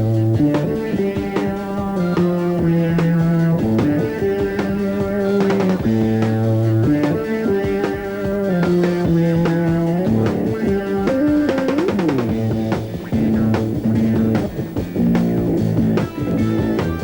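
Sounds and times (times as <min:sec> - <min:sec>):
drum kit: 0:00.0 - 0:17.0
electric guitar lines: 0:00.0 - 0:17.0.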